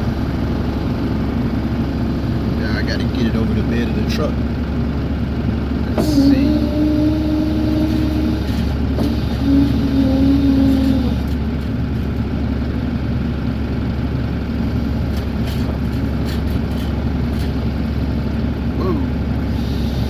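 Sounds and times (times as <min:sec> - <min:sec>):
excavator diesel engine under load: 0:00.0 - 0:20.0
hydraulic whine: 0:05.6 - 0:11.8, 0:14.6 - 0:20.0.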